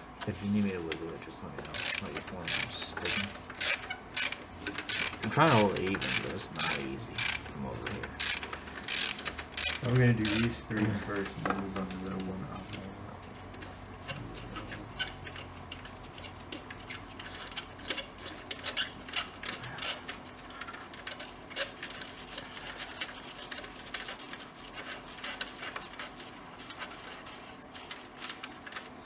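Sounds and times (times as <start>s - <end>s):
ratchet wrench clicking: 1.7s - 10.6s.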